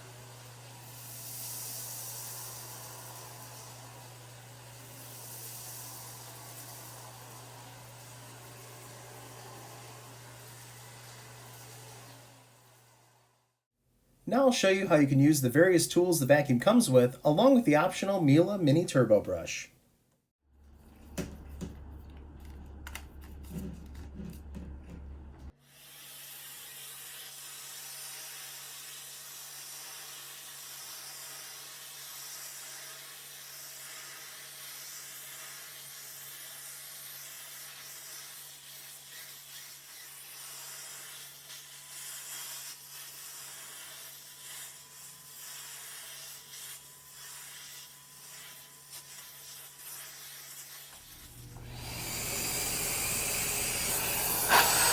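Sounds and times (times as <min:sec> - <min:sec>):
vacuum cleaner suction: 0:00.0 - 0:13.2, 0:47.4 - 0:54.9.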